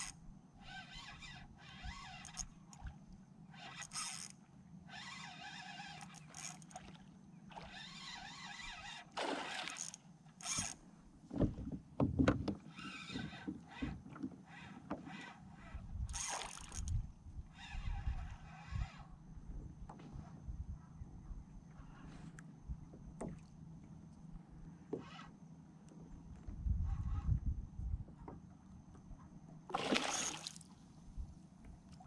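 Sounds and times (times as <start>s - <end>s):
fishing reel cranking: 0.0s - 2.9s, 3.5s - 6.9s, 7.5s - 10.8s, 12.7s - 13.9s, 14.5s - 19.1s, 29.9s - 30.5s.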